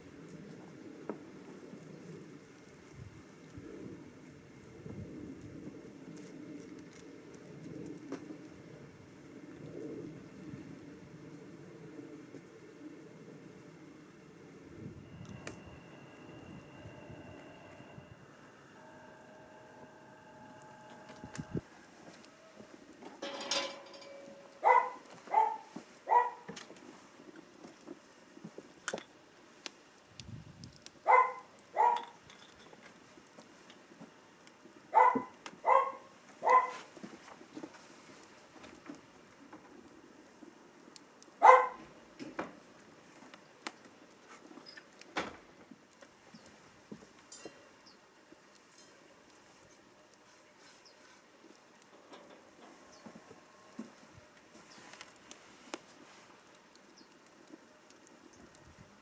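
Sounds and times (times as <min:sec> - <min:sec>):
small dog barking: 0:24.6 - 0:26.5, 0:31.0 - 0:32.2, 0:34.9 - 0:36.9, 0:41.4 - 0:41.8.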